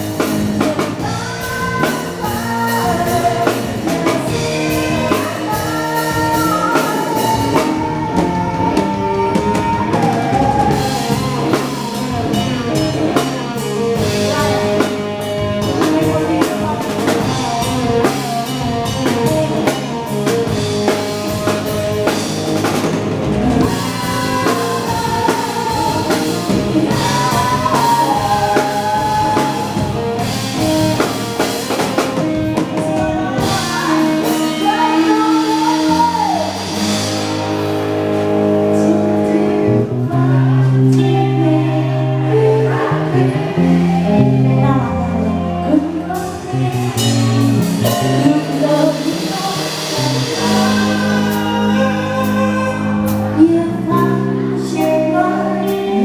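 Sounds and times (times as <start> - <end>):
drum kit beat: 0.0 - 56.0
live band playing dance song: 0.0 - 56.0
person singing: 0.0 - 56.0.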